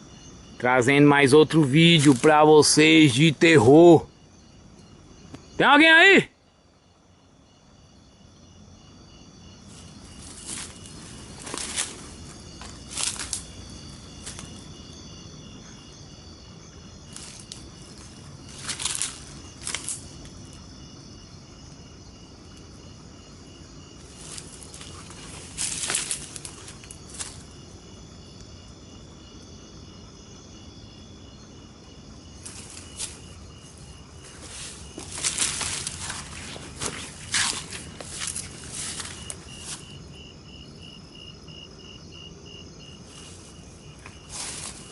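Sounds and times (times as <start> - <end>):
fast pulsed insect trill: 0.0 - 44.9
insects chirping: 0.0 - 44.9
rustling noises: 1.6 - 2.5, 9.6 - 14.8, 17.1 - 20.5, 24.0 - 27.6, 32.4 - 40.1, 42.9 - 44.9.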